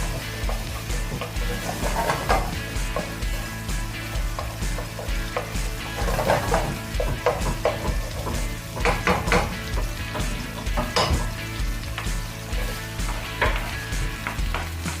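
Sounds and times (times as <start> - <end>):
utensil scraping pan: 0.0 - 11.4
background music: 0.0 - 15.0
garlic sizzling in a pan: 0.0 - 15.0.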